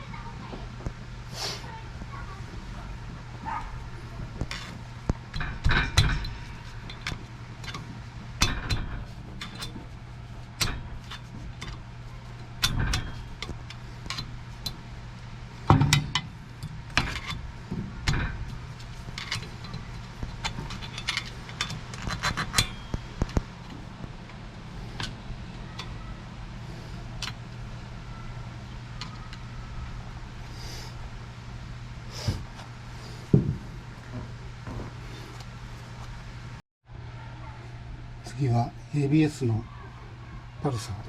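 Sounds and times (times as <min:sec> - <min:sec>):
steady low hum: 0:00.0 - 0:41.0
metal tools clinking and knocking: 0:04.5 - 0:09.9, 0:10.6 - 0:11.9, 0:12.6 - 0:14.8, 0:18.0 - 0:23.4.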